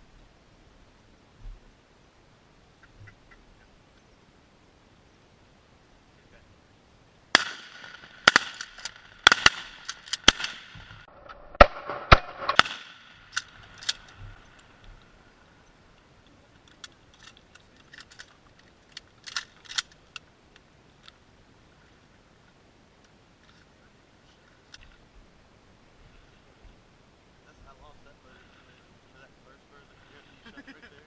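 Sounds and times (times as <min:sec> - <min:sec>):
shotgun blasts: 0:07.3 - 0:14.1.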